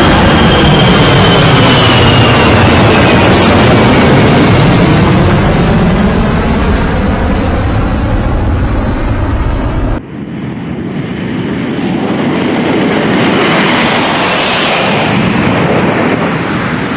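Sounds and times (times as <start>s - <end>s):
aircraft engine: 0.0s - 16.9s.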